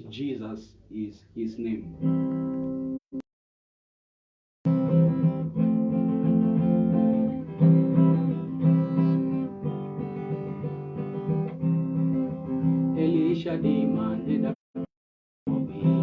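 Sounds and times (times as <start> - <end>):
acoustic guitar strumming: 4.7 - 14.9, 15.5 - 16.0.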